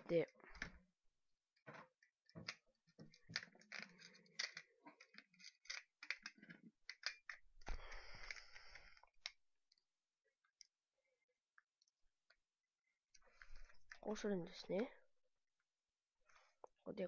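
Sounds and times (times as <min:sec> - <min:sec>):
small plastic parts clicking and rattling: 0:00.0 - 0:00.9, 0:01.6 - 0:10.8.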